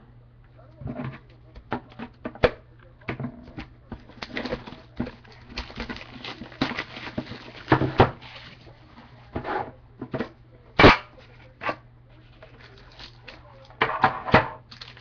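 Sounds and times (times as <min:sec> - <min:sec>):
wrapper and cardboard rustling: 0:03.9 - 0:09.0, 0:12.3 - 0:13.7, 0:14.6 - 0:15.0.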